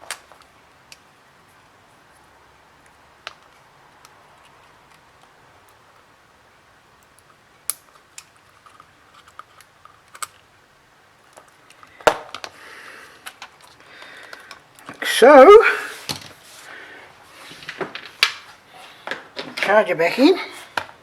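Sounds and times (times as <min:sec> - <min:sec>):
clicks and taps of small parts: 0:13.2 - 0:15.0.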